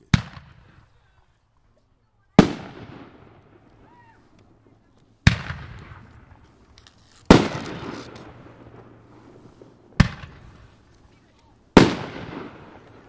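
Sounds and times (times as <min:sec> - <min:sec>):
firework bangs with echo: 0:00.0 - 0:00.8, 0:02.4 - 0:03.6, 0:05.2 - 0:06.4, 0:07.3 - 0:10.7, 0:11.7 - 0:13.0.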